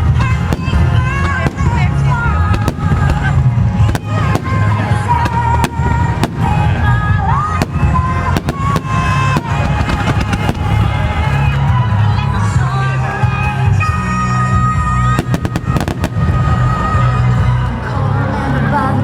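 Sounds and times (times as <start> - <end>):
fireworks bangs and cracks: 0.0 - 12.1, 15.1 - 17.6
music with steady bass: 0.0 - 19.0.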